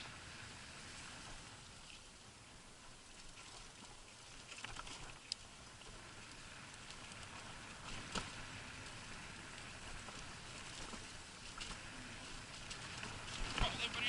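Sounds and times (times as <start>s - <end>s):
scooter tyres on wet dirt: 7.2s - 14.0s.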